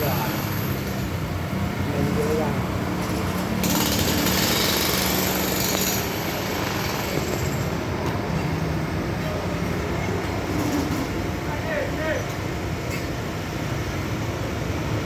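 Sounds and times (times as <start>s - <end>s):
heavy machinery engine running: 0.0s - 11.5s.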